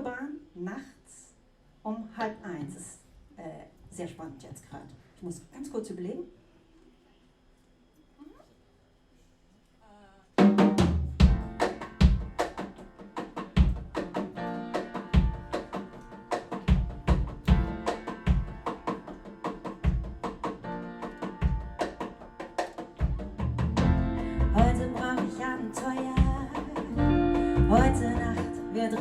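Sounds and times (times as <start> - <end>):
bass drum and snare strikes: 10.4 - 14.4, 16.4 - 18.8, 23.0 - 25.2
live band playing: 11.2 - 29.0.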